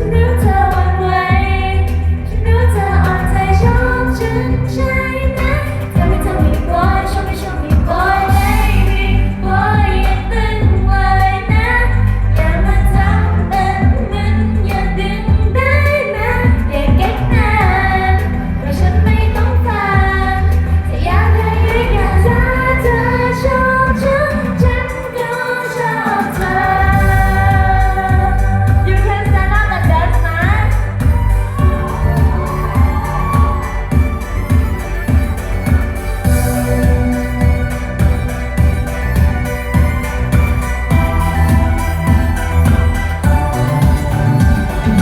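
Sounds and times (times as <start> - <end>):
bass line: 0.0 - 25.1, 26.4 - 45.0
woman singing: 0.0 - 45.0.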